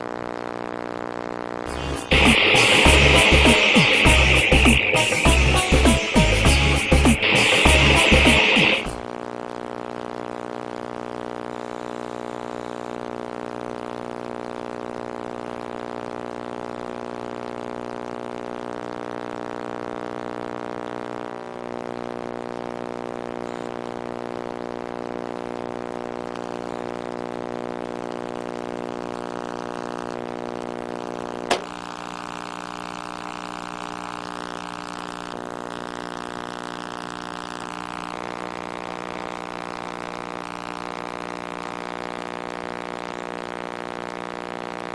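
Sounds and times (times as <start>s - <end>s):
microwave oven humming: 26.7s - 44.9s
sharp pop: 31.5s - 31.8s.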